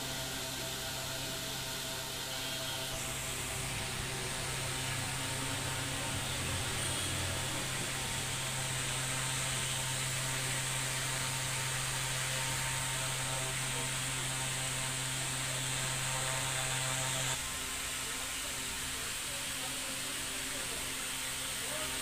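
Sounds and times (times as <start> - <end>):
constant hiss: 0.0 - 22.0.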